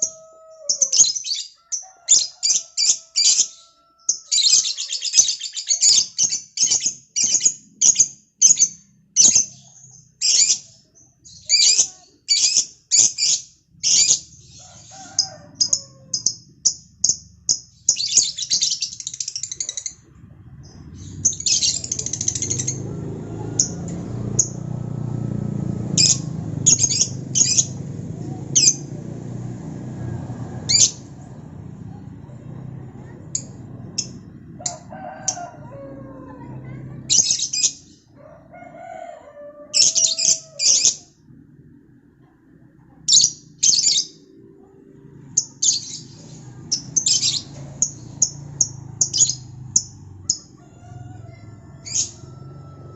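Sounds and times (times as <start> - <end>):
bird chirping: 0.0 - 38.2, 45.2 - 52.4
low rumble: 19.8 - 37.4.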